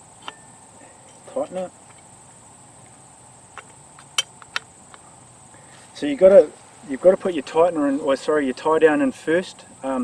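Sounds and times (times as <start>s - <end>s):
crickets chirring: 0.0s - 10.0s
sharp clicks of wire handling: 3.5s - 5.0s.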